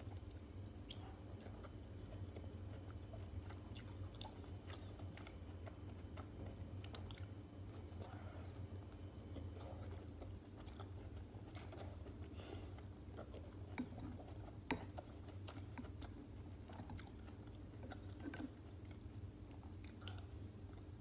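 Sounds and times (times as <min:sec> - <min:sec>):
chewing and biting food: 0:00.0 - 0:21.0
steady low hum: 0:00.0 - 0:21.0.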